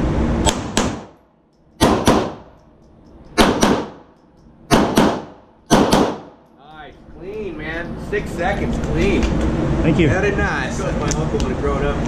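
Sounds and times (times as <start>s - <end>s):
handgun shots: 1.8s - 2.5s, 3.4s - 4.1s, 4.7s - 6.4s.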